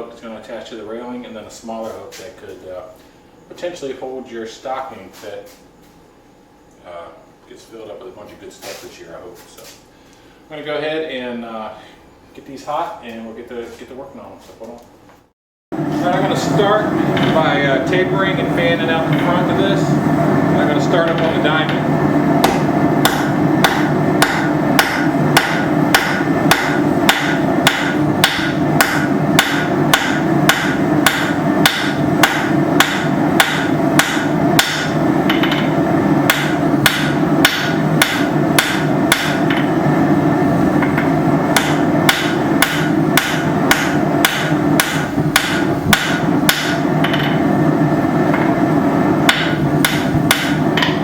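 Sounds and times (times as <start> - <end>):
hammer striking metal on anvil: 21.1 - 39.7, 40.8 - 47.4, 49.2 - 51.0.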